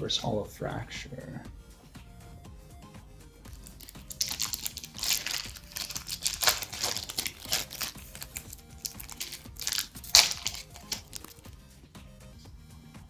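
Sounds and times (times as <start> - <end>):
foil wrapper crinkling and tearing: 3.5 - 11.6.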